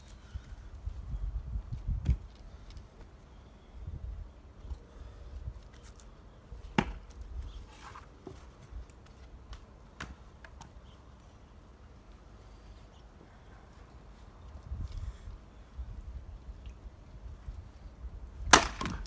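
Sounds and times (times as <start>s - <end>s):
axe striking a log: 6.8s - 7.0s, 18.5s - 19.0s.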